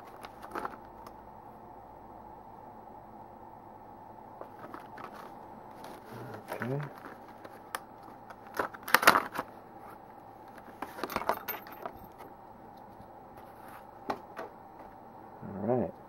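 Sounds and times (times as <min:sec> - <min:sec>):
tool kit clicks and clinks: 0:10.8 - 0:12.2.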